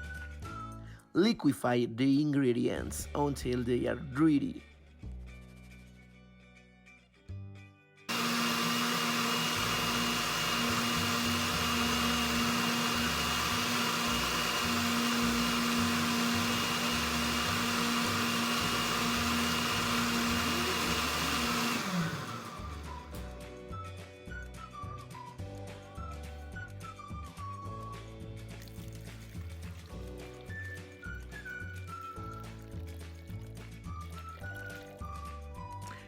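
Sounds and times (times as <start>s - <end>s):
blender running: 8.1s - 23.4s.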